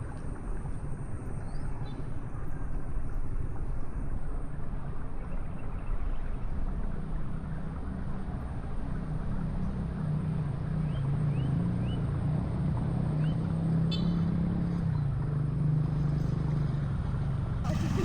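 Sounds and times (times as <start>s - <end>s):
vehicle engine humming: 17.5s - 18.0s.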